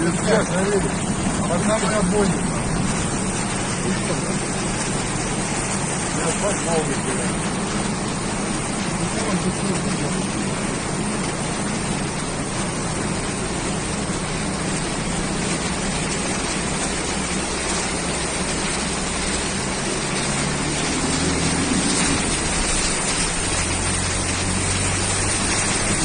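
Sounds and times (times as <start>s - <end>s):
engine running: 0.0s - 26.0s
rush of wind or water: 0.0s - 26.0s.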